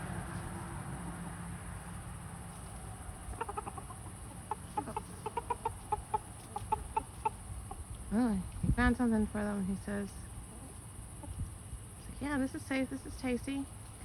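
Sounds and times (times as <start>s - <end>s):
rooster clucking rapidly: 3.2s - 7.9s.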